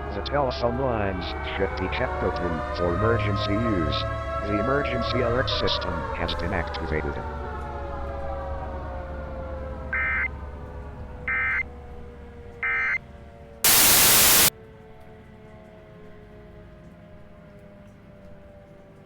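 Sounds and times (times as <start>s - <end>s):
siren winding down: 10.0s - 10.3s, 13.7s - 14.5s
burst of static: 13.7s - 14.5s
two-tone data bursts: 13.7s - 14.5s.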